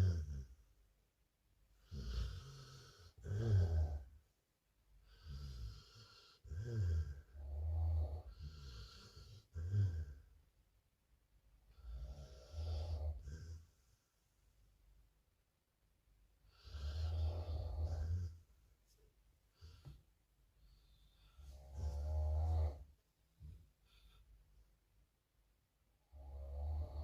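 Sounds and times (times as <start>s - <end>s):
low rumbling snoring: 16.7s - 18.4s, 21.4s - 22.9s, 26.0s - 27.0s.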